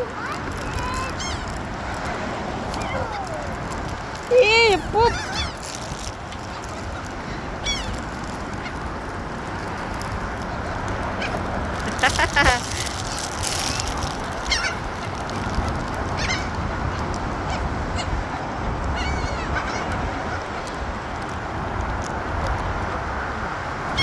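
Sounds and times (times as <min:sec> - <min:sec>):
gulls calling: 0:00.0 - 0:21.2
steady background noise: 0:00.0 - 0:24.0.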